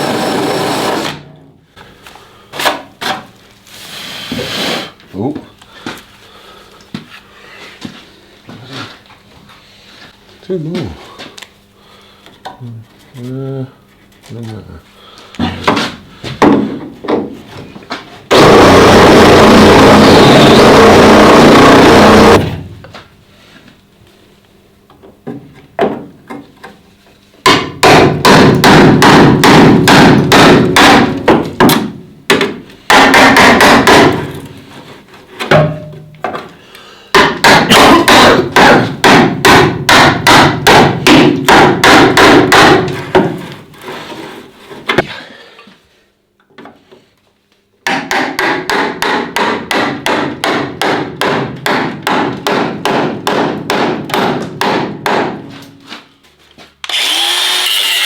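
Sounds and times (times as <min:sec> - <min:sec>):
rapid hammer blows on sheet metal: 0:18.3 - 0:22.6, 0:27.8 - 0:31.4, 0:32.9 - 0:34.4, 0:37.2 - 0:43.1.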